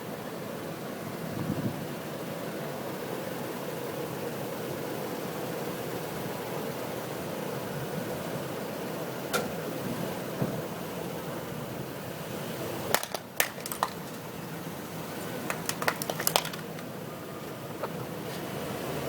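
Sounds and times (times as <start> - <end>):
truck hum: 0.0 - 19.0
plastic cracking and crunching: 12.9 - 14.3, 15.4 - 16.9.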